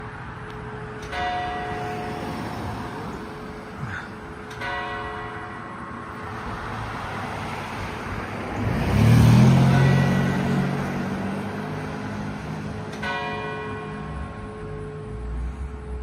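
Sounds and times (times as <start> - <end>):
church bell ringing: 0.0 - 6.6, 9.5 - 16.0
motor vehicle passing: 6.2 - 13.1.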